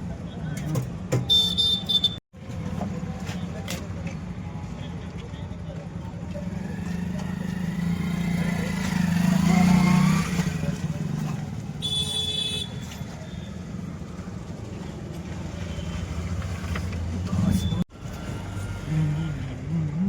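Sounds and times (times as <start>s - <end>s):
vehicle engine passing: 6.4s - 11.8s.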